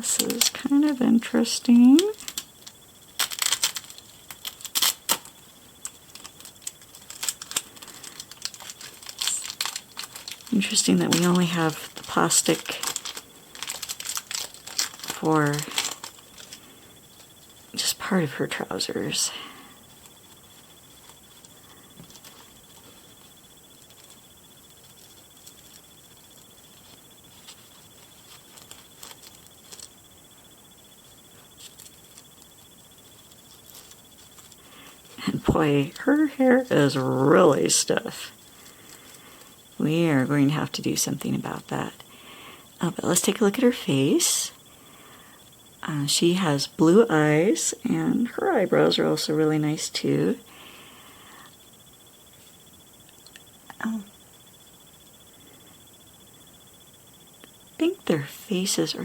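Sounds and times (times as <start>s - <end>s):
background hiss: 0.0s - 59.0s
thin high whine: 0.0s - 59.0s
plastic clicks and crinkles: 2.0s - 17.9s, 19.9s - 30.0s, 31.1s - 36.1s.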